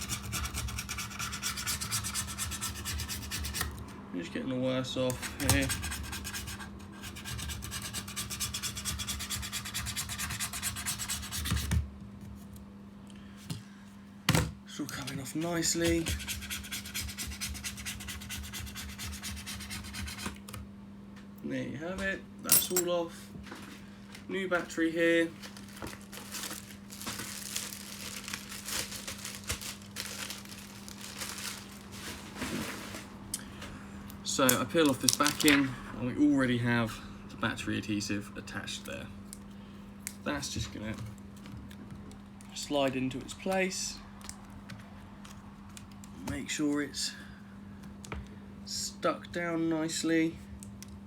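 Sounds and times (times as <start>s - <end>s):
plastic packaging crinkling: 25.2s - 33.2s, 34.5s - 35.6s.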